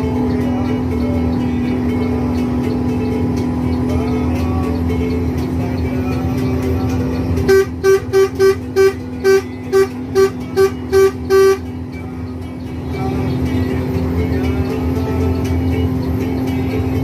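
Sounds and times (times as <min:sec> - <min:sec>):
low drone of moving bus: 0:00.0 - 0:17.0
bus horn short blasts: 0:07.4 - 0:11.8.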